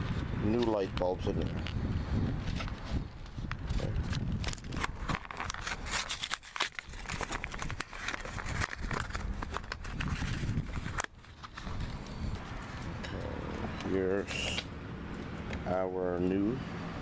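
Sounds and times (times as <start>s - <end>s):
packaging crinkling and tearing: 2.4s - 12.8s.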